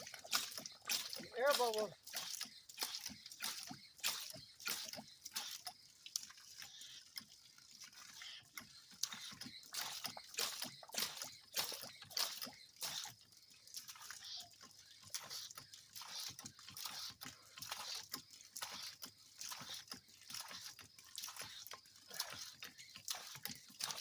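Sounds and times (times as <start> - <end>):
water spurting and splashing: 0.0 - 24.0.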